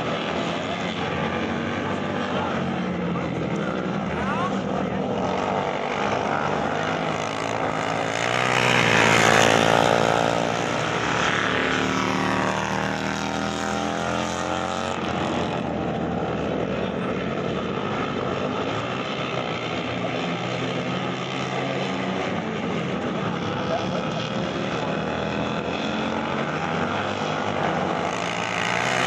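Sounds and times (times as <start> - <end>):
motorcycle engines: 0.0 - 29.0
racing motorcycle passing: 0.0 - 29.0.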